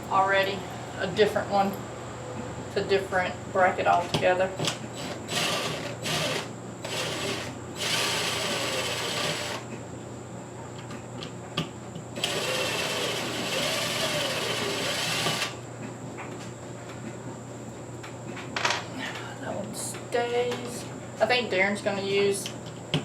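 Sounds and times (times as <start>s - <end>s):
power drill driving screws: 5.0s - 9.6s, 12.2s - 15.6s.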